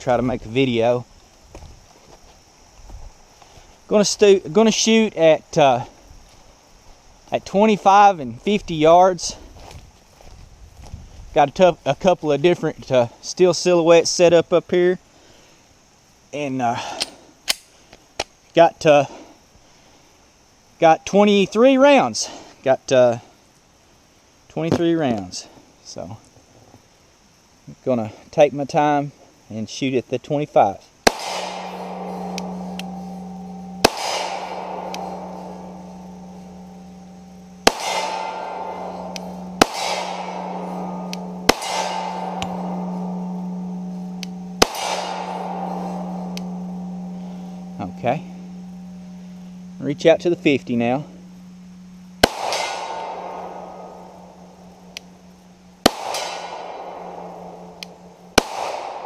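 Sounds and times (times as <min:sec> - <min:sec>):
pistol shots: 0:31.1 - 0:33.0, 0:33.6 - 0:35.6, 0:37.6 - 0:43.7, 0:44.6 - 0:46.4, 0:52.2 - 0:53.9, 0:55.8 - 0:57.6, 0:58.4 - 0:59.0
steel target ringing: 0:31.1 - 0:59.0.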